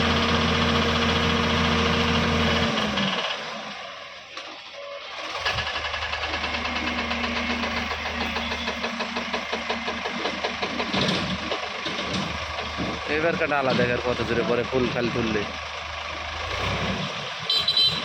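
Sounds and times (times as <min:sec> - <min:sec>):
diesel engine clattering: 0:00.0 - 0:18.0.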